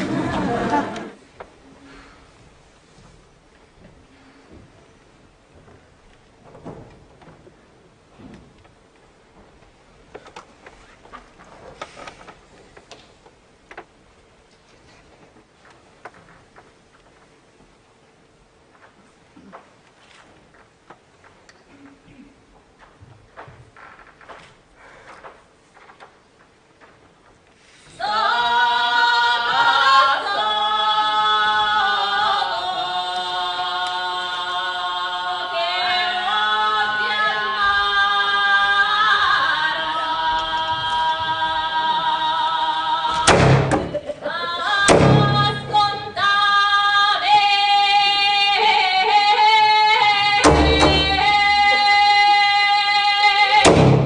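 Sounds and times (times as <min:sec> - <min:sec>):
voices singing held notes: 0:28.0 - 0:54.0
heavy thumps: 0:43.2 - 0:44.0, 0:44.8 - 0:46.1, 0:50.4 - 0:52.0, 0:53.6 - 0:54.0.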